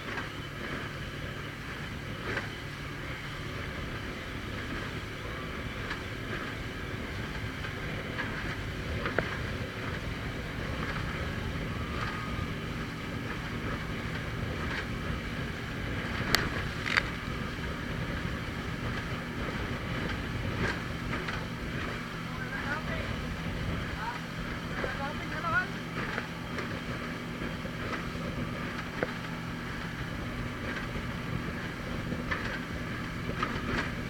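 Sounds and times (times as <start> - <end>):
motorboat engine running: 0.0 - 34.0
water noise: 0.0 - 34.0
wind: 0.0 - 34.0.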